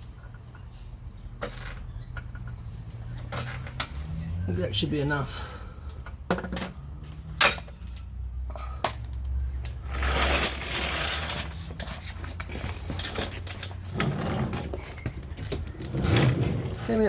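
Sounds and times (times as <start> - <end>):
hand tools clicking and clinking: 5.9 - 17.0.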